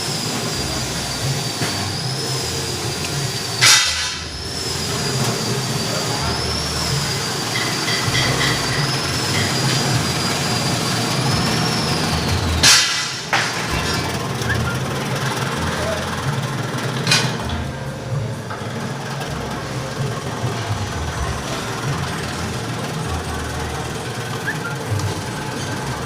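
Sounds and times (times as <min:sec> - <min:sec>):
loud machine bursts: 0:00.0 - 0:26.0
shredding machine whining: 0:00.0 - 0:26.0.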